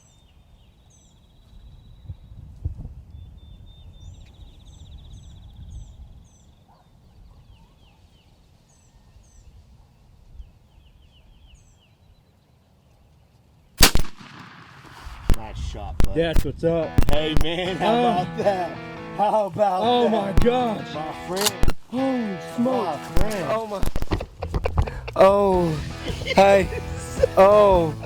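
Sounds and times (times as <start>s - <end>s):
songbirds chirping and trilling: 0.0s - 14.3s, 16.6s - 28.0s
shotgun blast: 13.8s - 17.6s.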